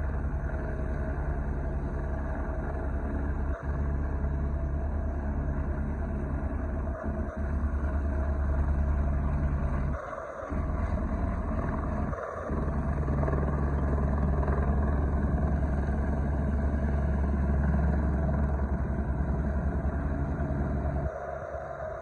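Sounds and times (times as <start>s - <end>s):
helicopter rotor and engine: 0.0s - 22.0s.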